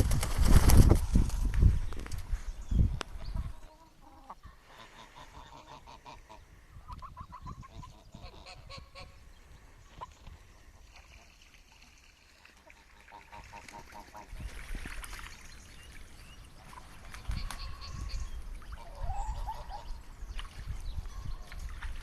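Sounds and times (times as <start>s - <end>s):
ducks quacking: 3.3s - 9.2s, 12.7s - 14.5s, 16.7s - 20.0s
geese honking: 3.4s - 9.2s.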